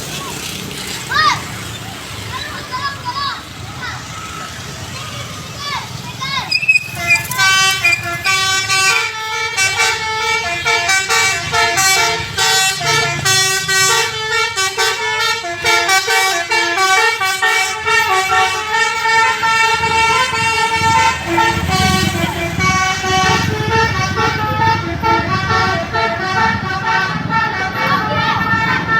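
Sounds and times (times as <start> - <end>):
musical bus horn: 6.5 - 28.9.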